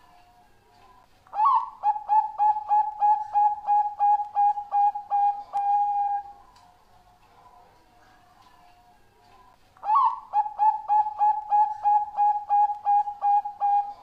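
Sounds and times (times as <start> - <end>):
dove cooing: 1.3 - 6.4, 9.8 - 14.0
faint cooing of other doves: 1.4 - 6.4, 9.8 - 14.0.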